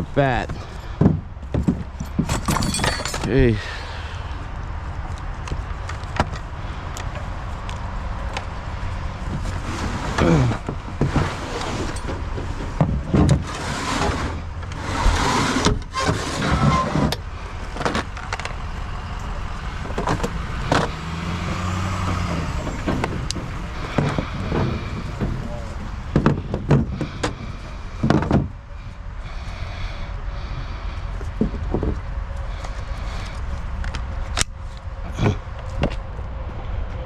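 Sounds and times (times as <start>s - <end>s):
knocks and clatter: 0.4s - 3.3s, 9.2s - 14.7s, 19.8s - 28.6s
vehicle engine running: 17.2s - 37.0s.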